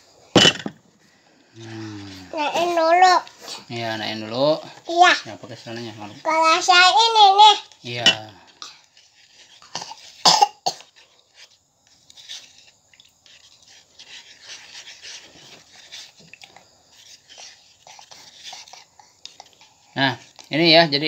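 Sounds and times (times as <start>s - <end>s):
faint rustling: 0.8s - 21.0s
short coughs: 9.7s - 10.9s.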